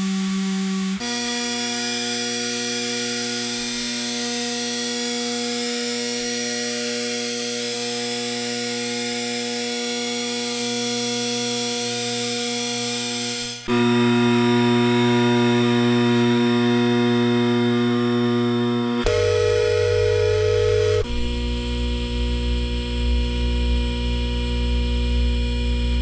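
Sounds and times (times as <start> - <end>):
power supply electrical hum: 11.4 - 26.0.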